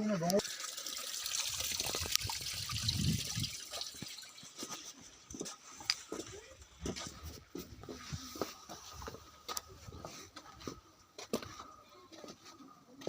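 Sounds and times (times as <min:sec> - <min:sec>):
water pouring: 0:00.3 - 0:05.1.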